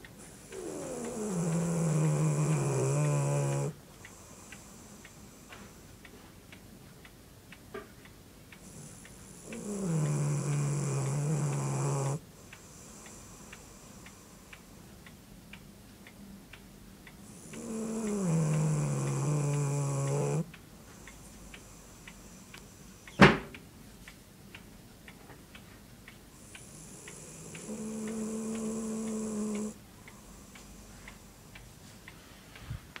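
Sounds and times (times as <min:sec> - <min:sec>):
dog snoring: 0:00.2 - 0:05.7, 0:08.6 - 0:14.2, 0:17.2 - 0:23.1, 0:26.4 - 0:30.6.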